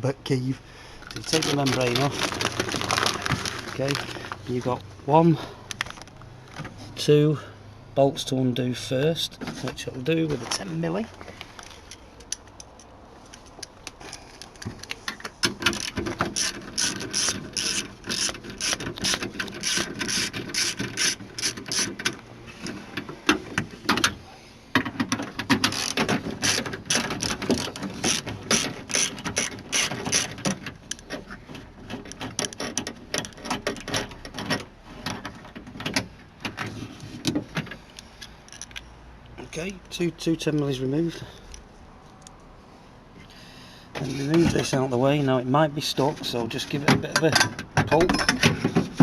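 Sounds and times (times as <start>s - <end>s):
socket ratchet clicking: 15.4s - 22.2s, 25.6s - 31.1s.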